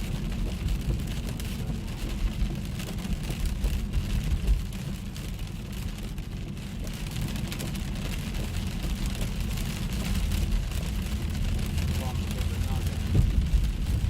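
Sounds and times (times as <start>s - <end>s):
heavy rain hiss: 8.2s - 14.0s
low thunder rumble: 11.2s - 14.0s.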